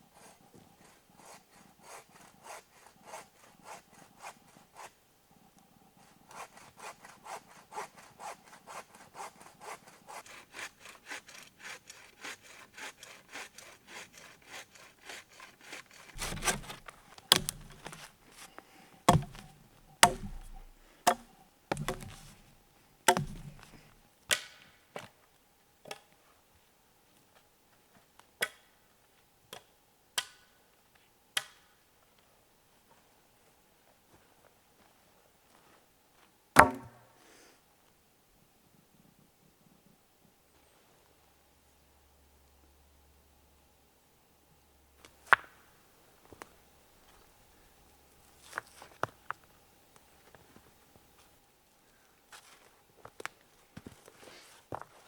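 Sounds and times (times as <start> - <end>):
hand saw cutting wood: 6.3 - 18.5, 19.1 - 24.0
sharp knocks: 16.2 - 18.1, 19.1 - 22.5, 23.1 - 24.0, 36.6 - 37.0.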